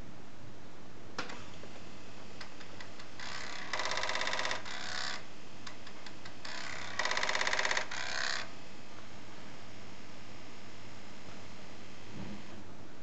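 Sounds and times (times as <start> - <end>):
floppy disk drive whirring: 1.2 - 8.5.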